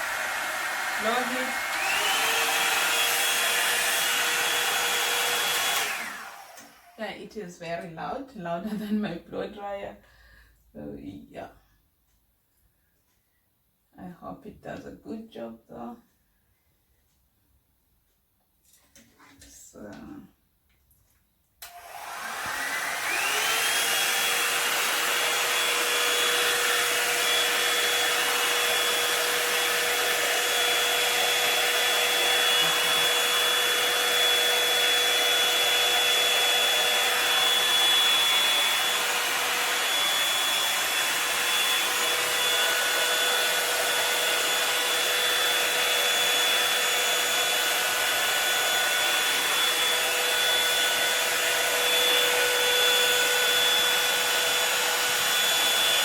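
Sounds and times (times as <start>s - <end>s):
hair dryer motor whine: 0.0s - 7.1s, 21.6s - 56.0s.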